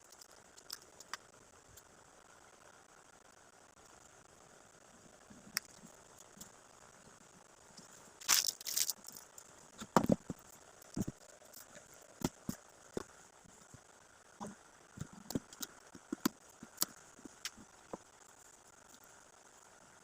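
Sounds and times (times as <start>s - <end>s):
wrapping paper crinkling: 8.2s - 9.4s.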